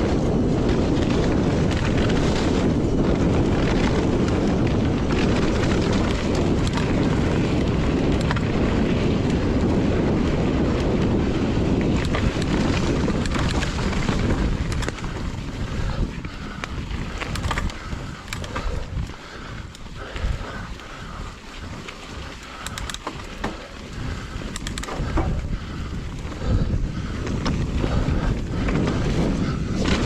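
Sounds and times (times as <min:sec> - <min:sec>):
bike rattles and clicks: 0:00.0 - 0:30.0
bike tyres rumbling on dirt: 0:00.0 - 0:30.0
wind buffeting microphone: 0:00.0 - 0:30.0.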